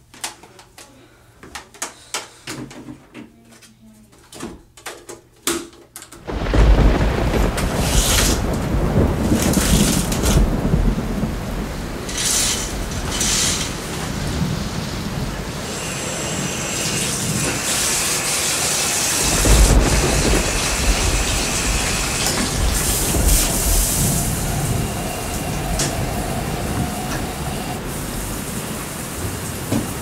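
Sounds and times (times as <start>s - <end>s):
heavy rain: 6.2s - 30.0s
thunder rumbles: 6.2s - 30.0s.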